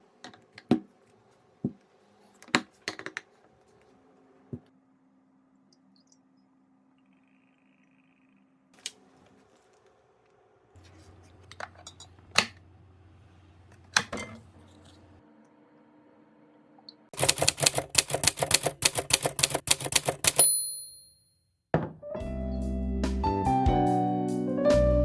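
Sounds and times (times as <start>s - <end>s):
typewriter-like key clicks: 17.2s - 20.9s.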